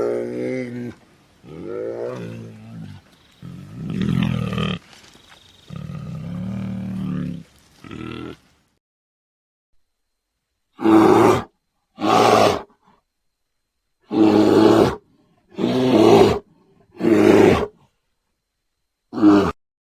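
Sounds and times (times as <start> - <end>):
bear roaring: 0.0 - 4.8, 5.7 - 8.5, 10.8 - 12.8, 14.0 - 17.8, 19.1 - 19.6.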